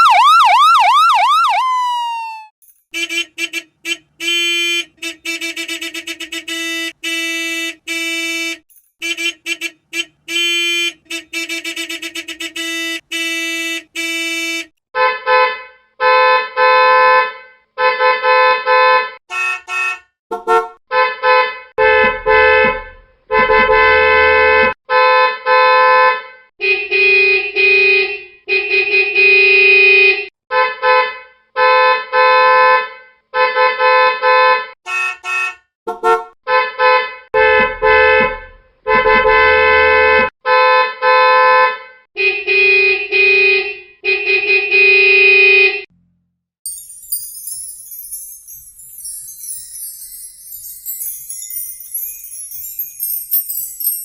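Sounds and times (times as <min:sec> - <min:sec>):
pulsing electronic alarm tone: 0:00.0 - 0:02.5
horn honking: 0:03.0 - 0:45.9.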